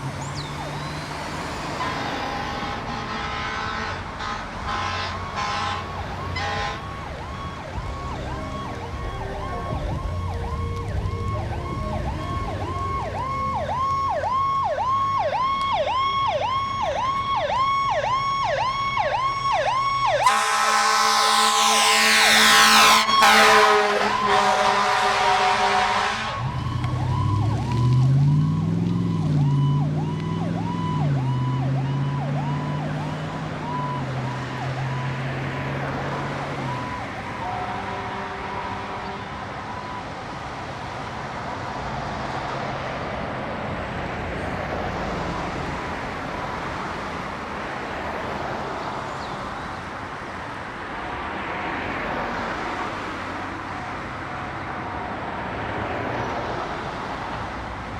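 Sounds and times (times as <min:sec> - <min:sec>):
road traffic noise: 0:00.0 - 0:57.9
ambulance air horns: 0:00.8 - 0:27.1, 0:35.9 - 0:40.2
electronic siren yelping: 0:04.7 - 0:35.4, 0:36.0 - 0:37.8.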